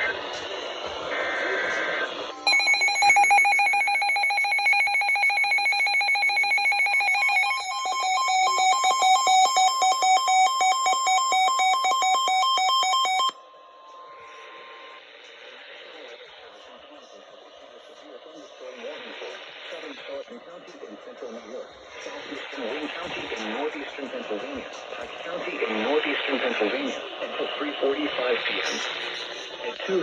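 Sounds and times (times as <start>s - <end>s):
faint steady tone: 1.3s - 29.8s
pulsing electronic alert warble: 2.5s - 13.4s.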